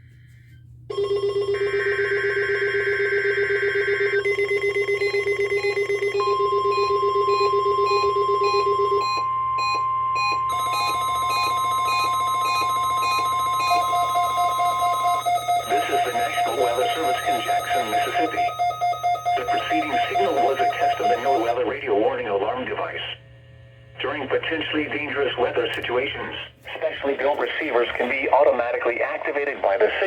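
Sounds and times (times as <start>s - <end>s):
steady warning alarm tone: 0.9s - 30.0s
radio receivers beeping: 7.4s - 23.2s, 24.0s - 30.0s.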